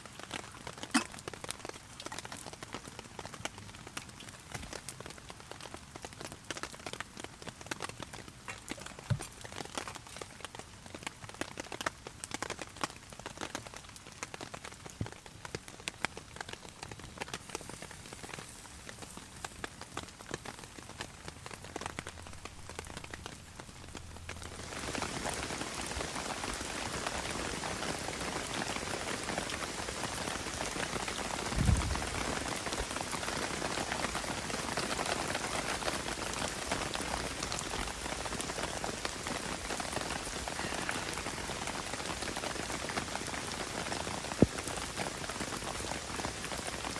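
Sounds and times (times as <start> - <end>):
rain falling on a tarp: 0.0 - 46.9
dull thump: 31.6 - 32.1.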